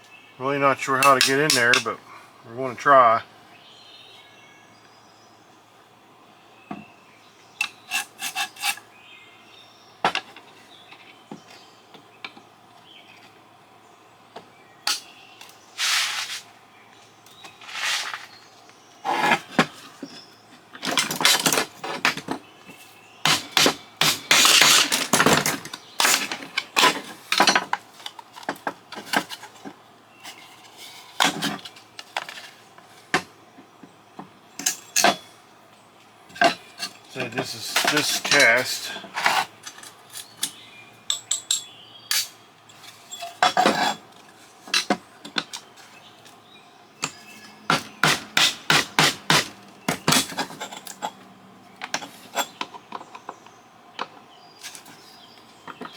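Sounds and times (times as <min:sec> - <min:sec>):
hand tools scraping and prying: 0:00.8 - 0:02.0, 0:07.6 - 0:08.9, 0:14.9 - 0:16.5, 0:17.5 - 0:18.4, 0:19.0 - 0:33.3, 0:34.6 - 0:35.3, 0:36.3 - 0:45.9, 0:47.0 - 0:51.2, 0:51.8 - 0:53.4.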